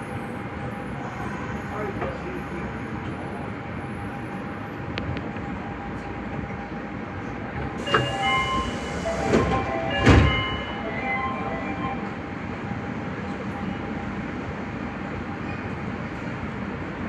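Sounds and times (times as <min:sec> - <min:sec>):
train doors shutting: 0:07.6 - 0:12.3.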